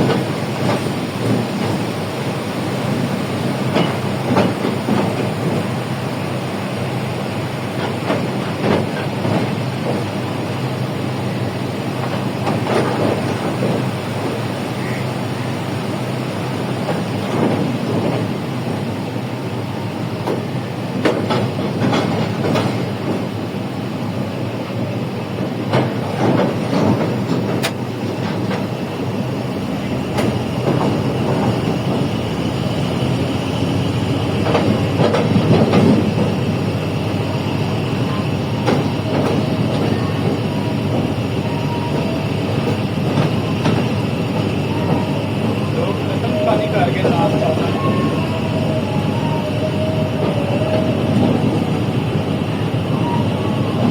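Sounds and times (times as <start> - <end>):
wheels clacking over rails: 0.0 - 6.0, 25.6 - 53.9
train rumble: 0.0 - 53.9.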